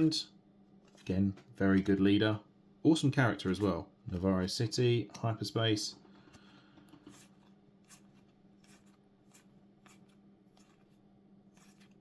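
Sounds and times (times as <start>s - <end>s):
cards being shuffled: 6.9s - 12.0s.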